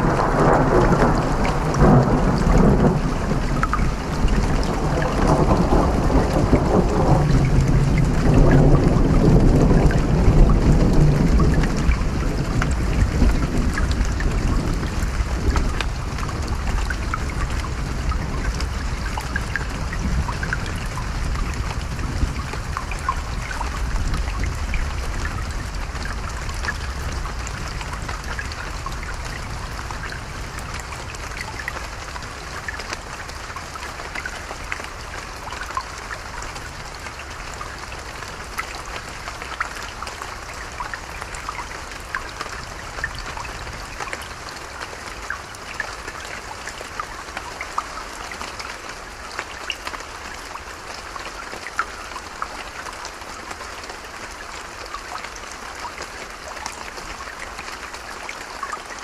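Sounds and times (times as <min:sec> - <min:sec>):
distant thunder rumble: 0:00.0 - 0:18.8
stream trickling and babbling: 0:00.0 - 0:59.0
water splashes and drips: 0:00.0 - 0:59.0.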